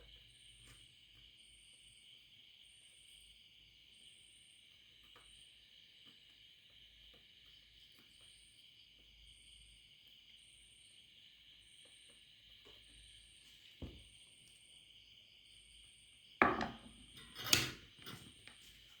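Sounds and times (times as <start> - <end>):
knocks on hard surface: 16.4 - 16.8.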